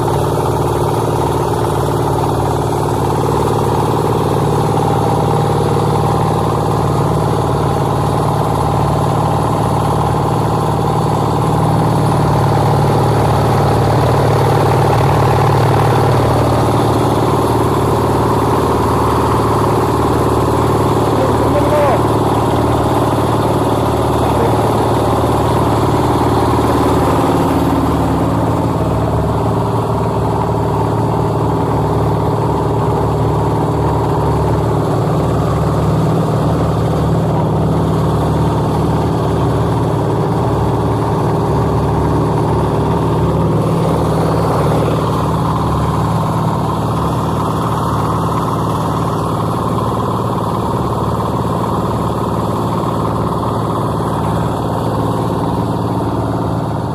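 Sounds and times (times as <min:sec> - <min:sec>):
concrete mixer engine running: 0:00.0 - 0:56.9.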